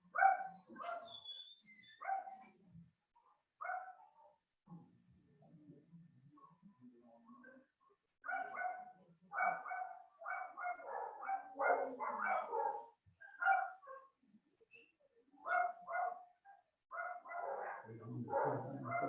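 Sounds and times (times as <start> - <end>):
dog barking: 0.1 - 1.2, 2.0 - 2.5, 3.6 - 4.4, 7.3 - 14.2, 15.4 - 19.0.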